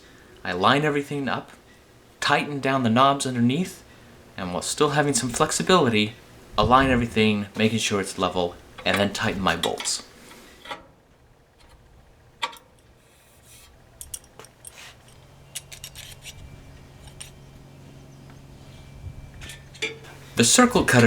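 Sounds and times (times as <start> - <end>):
low steady hum: 0.0 - 21.0.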